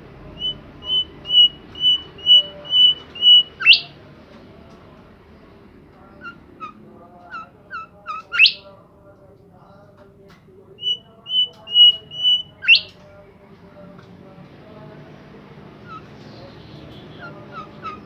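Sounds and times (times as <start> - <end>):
songbird chirping and whistling: 0.3 - 4.0, 6.2 - 8.8, 10.8 - 13.1.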